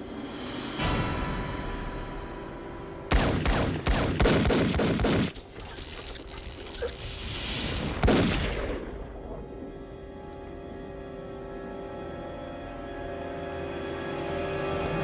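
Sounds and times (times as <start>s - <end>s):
loud gunshot: 3.1s - 5.5s, 7.8s - 9.0s
rapid volley of gunshots: 3.1s - 7.0s, 7.8s - 8.9s.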